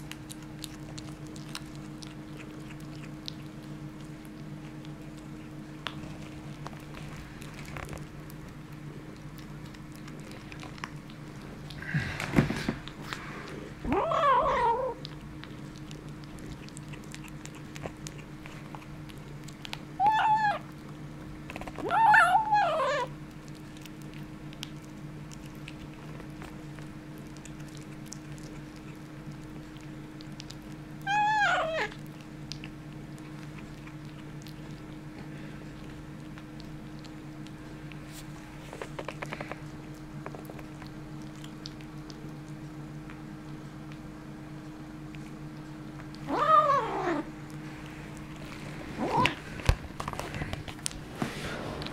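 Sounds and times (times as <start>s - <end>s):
kitten yowling: 13.9s - 15.0s, 20.0s - 20.7s, 21.8s - 23.1s, 31.0s - 32.0s, 46.2s - 47.3s.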